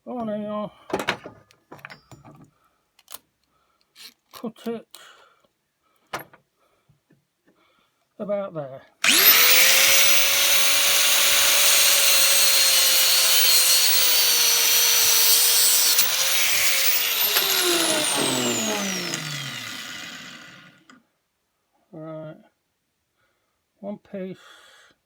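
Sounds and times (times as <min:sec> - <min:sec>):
angle grinder cutting metal: 0:09.0 - 0:21.0.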